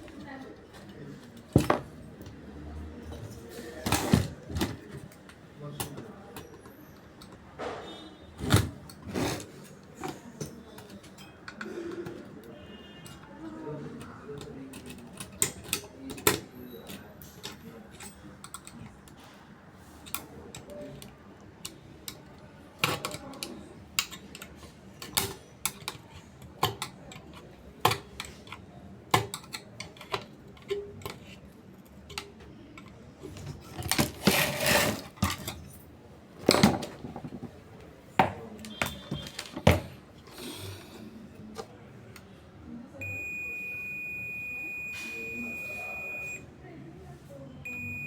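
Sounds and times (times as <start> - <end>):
scraping and rustling: 33.3 - 35.7.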